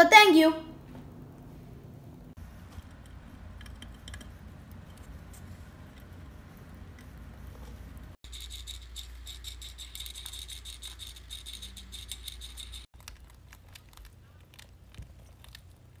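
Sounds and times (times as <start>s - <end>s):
sharp clicks and scratching: 2.6s - 16.0s
rat chirping: 8.2s - 12.9s.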